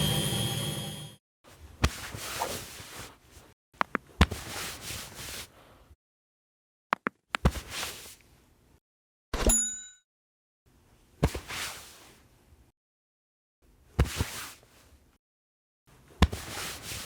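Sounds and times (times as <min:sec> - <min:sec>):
brief ringing tone: 0:00.0 - 0:01.2.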